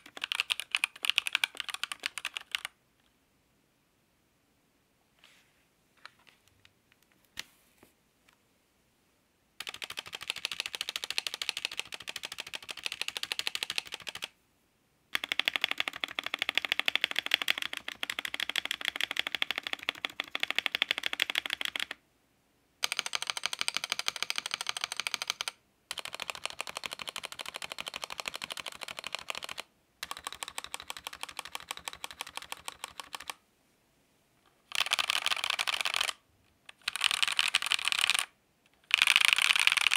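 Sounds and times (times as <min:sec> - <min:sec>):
mechanical keyboard typing: 0:00.0 - 0:02.8, 0:09.6 - 0:14.4, 0:15.1 - 0:22.0, 0:22.8 - 0:33.4, 0:34.7 - 0:39.9.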